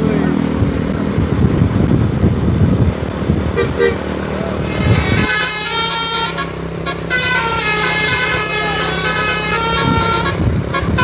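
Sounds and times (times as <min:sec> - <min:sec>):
heavy vehicle engine rumbling: 0:00.0 - 0:11.0
brief horn toot: 0:03.6 - 0:04.0, 0:04.6 - 0:11.0
multi-tone musical air horn: 0:03.6 - 0:04.0, 0:04.6 - 0:11.0.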